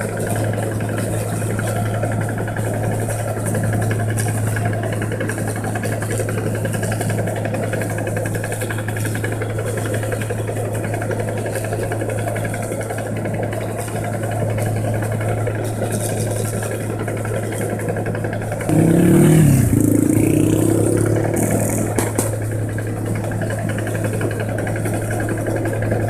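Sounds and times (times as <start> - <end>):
diesel engine humming: 18.7 - 23.3.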